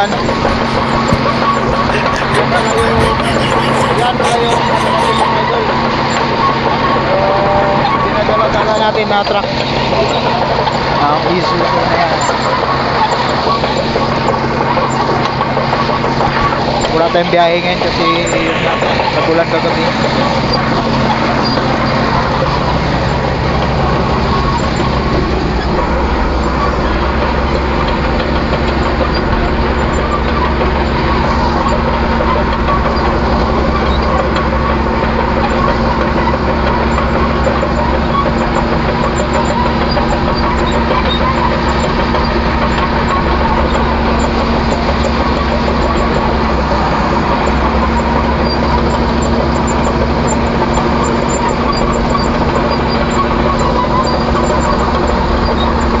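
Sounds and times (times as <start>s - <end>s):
truck engine running: 0.0s - 5.4s, 13.7s - 56.0s.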